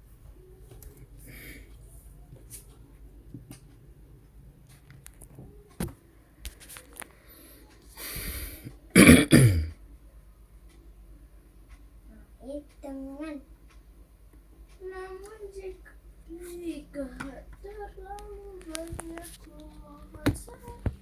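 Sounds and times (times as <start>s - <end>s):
small clicks and taps: 2.3s - 3.8s, 4.6s - 7.8s, 17.1s - 21.0s
sharp intake of breath: 7.2s - 8.7s
person coughing: 9.0s - 9.7s.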